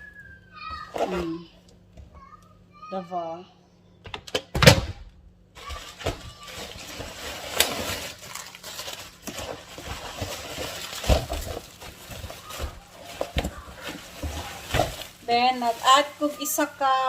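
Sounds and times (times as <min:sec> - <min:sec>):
packaging rustling and crinkling: 0:05.6 - 0:17.0.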